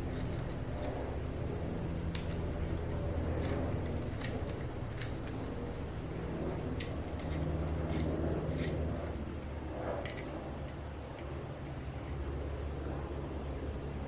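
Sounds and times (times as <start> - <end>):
steady low hum: 0.0 - 14.0
metal parts and tools clicking: 2.1 - 11.4.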